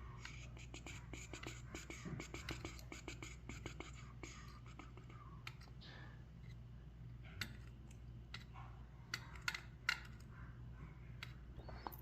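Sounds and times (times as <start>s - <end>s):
low steady hum: 0.0s - 12.0s
metal lock parts clicking: 9.1s - 10.3s.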